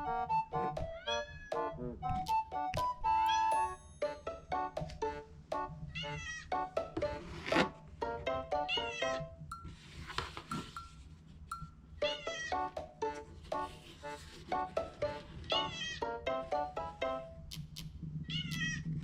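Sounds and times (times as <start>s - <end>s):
background music: 0.0s - 18.2s
cat meowing: 18.3s - 18.9s.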